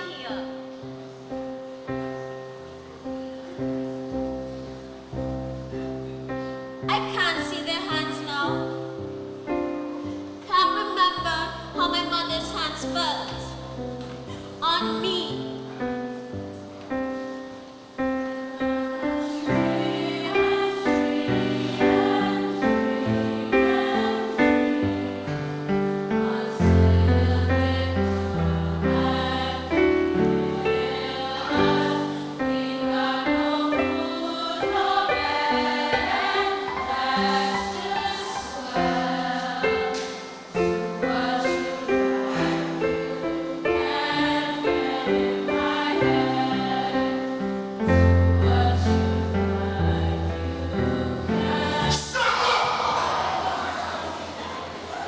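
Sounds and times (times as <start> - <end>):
piano accompaniment: 0.0 - 55.0
choir singing: 17.5 - 55.0.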